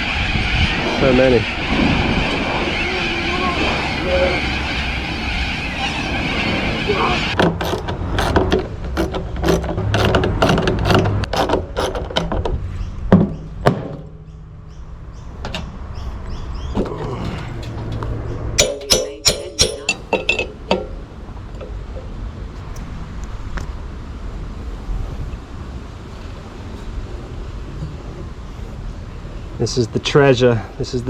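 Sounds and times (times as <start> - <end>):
wind rumble on microphone: 0.0 - 13.4, 19.8 - 31.0
metal parts knocking and clattering: 7.4 - 12.6.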